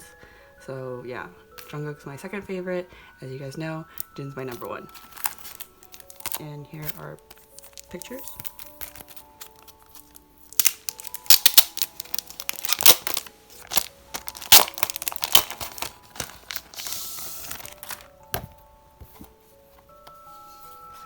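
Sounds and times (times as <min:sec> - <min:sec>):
soft background music: 0:00.0 - 0:21.0
plastic packaging crinkling: 0:04.4 - 0:18.7
plastic tearing: 0:04.6 - 0:18.4.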